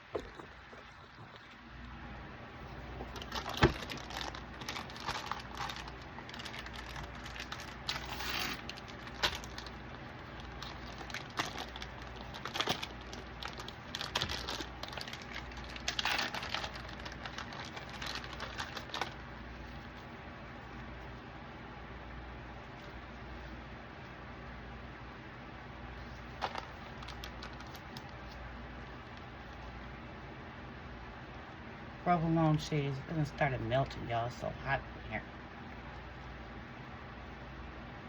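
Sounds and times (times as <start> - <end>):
packaging clicks taps and rustles: 3.0 - 19.2, 26.3 - 28.2.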